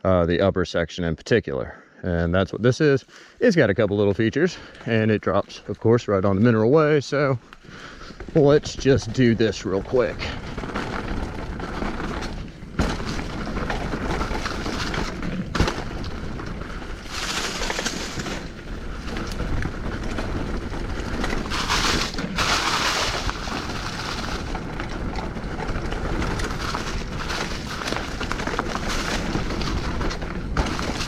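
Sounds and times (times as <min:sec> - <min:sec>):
tyres rattling on rocky trail: 0:03.9 - 0:31.0
wind rumbling on microphone: 0:08.1 - 0:31.0.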